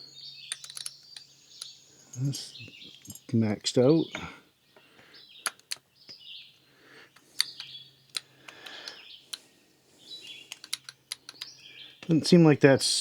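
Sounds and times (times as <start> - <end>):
clicks and taps of handled parts: 0.5 - 2.2, 5.4 - 6.2, 10.5 - 12.1.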